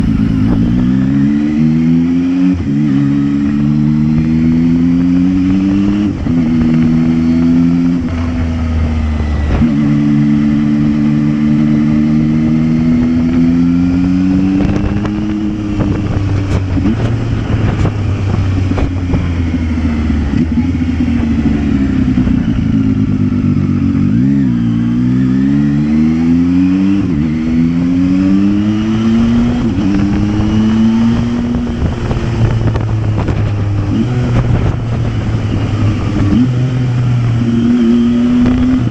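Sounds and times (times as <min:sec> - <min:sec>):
motorcycle engine revving: 0:00.0 - 0:38.9
wind noise: 0:00.0 - 0:38.9.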